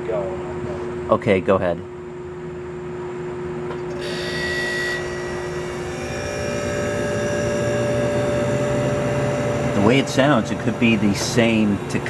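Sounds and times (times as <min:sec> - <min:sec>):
dehumidifier humming with whine: 0:00.0 - 0:12.0.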